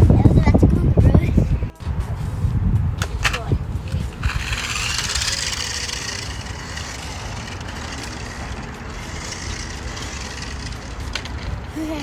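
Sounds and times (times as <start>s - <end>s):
toy car motor whirring: 3.0s - 12.0s.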